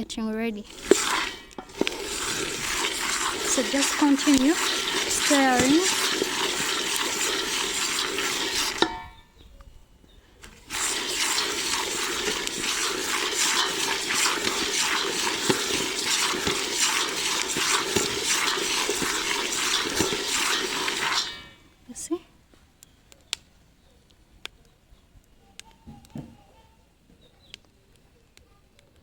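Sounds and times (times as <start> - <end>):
peanuts rattling in a saucepan: 0.6 - 8.9, 10.6 - 21.6.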